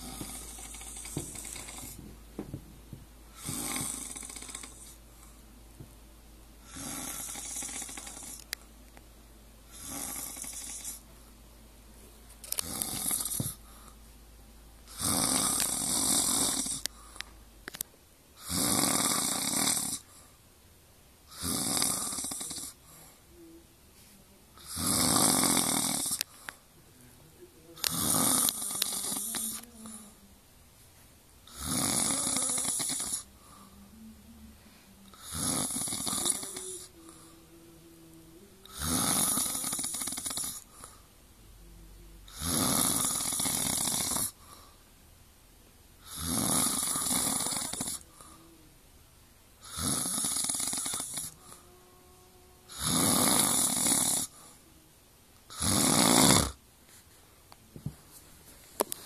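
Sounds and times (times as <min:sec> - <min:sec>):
heavy snoring: 0:00.0 - 0:02.1, 0:03.3 - 0:05.0, 0:06.6 - 0:08.5, 0:09.7 - 0:11.1, 0:12.5 - 0:13.7, 0:14.9 - 0:17.0, 0:18.4 - 0:20.1, 0:21.3 - 0:23.1, 0:24.6 - 0:26.3, 0:27.8 - 0:30.2, 0:31.4 - 0:34.1, 0:35.0 - 0:41.0, 0:42.3 - 0:44.7, 0:46.0 - 0:48.6, 0:49.6 - 0:54.7, 0:55.5 - 0:56.6
quiet breathing: 0:00.0 - 0:17.8, 0:18.4 - 0:20.6, 0:21.3 - 0:45.2, 0:45.9 - 0:55.8.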